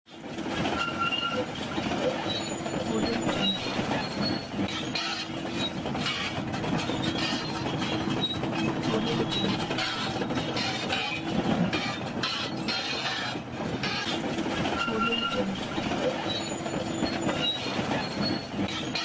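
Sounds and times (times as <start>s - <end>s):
metallic clanking of tracks: 0.2s - 19.0s
bulldozer diesel engine: 0.5s - 19.0s
metal on metal squeals: 14.8s - 19.0s.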